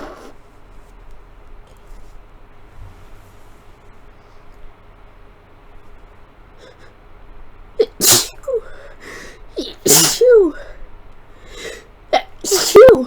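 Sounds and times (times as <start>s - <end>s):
person sneezing: 7.8s - 8.8s, 9.6s - 10.7s, 11.6s - 13.0s.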